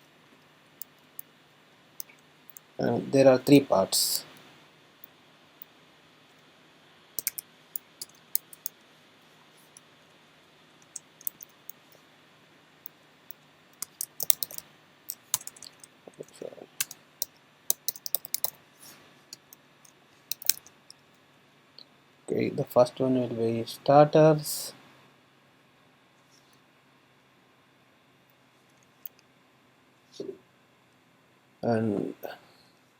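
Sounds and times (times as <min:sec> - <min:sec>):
typing on computer keyboard: 0:13.8 - 0:15.8, 0:17.7 - 0:18.5.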